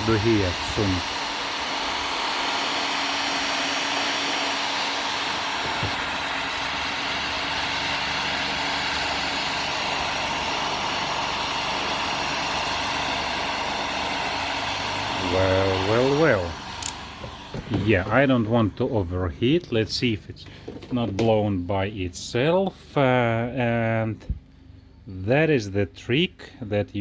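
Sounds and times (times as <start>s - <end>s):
heat gun blowing air: 0.0s - 18.6s.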